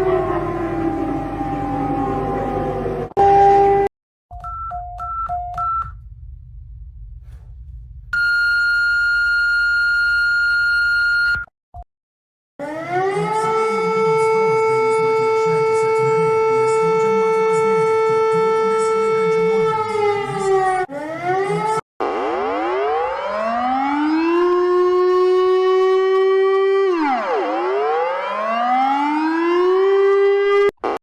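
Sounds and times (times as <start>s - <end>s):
low hum: 0.0s - 3.9s, 5.9s - 8.2s
siren wailing: 0.0s - 3.9s, 12.6s - 31.0s.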